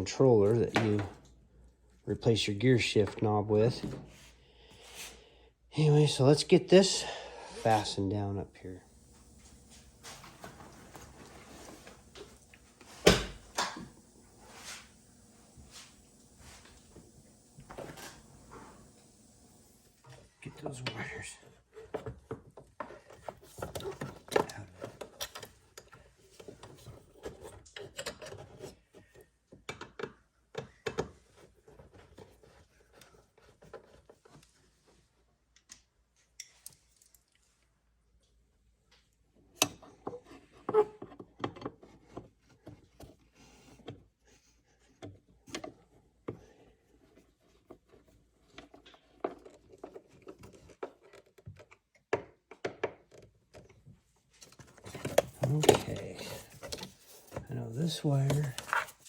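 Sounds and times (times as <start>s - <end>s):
hands handling plastic parts: 54.4s - 59.0s.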